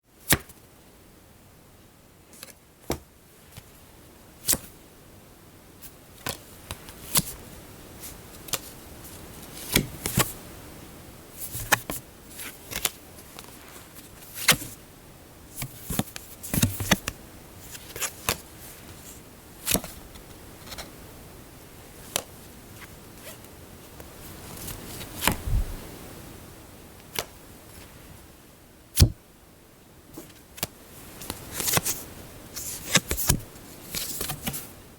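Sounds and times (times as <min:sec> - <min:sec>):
playing cards snapping and sliding: 0:12.7 - 0:13.6, 0:25.2 - 0:25.8.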